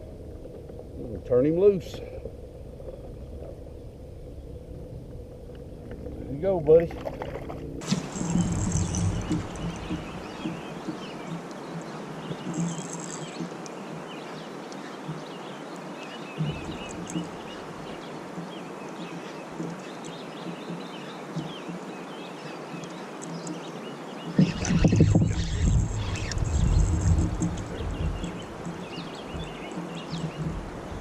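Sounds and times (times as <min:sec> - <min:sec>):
bird chirps: 0:07.8 - 0:30.6
river rushing: 0:07.8 - 0:31.0.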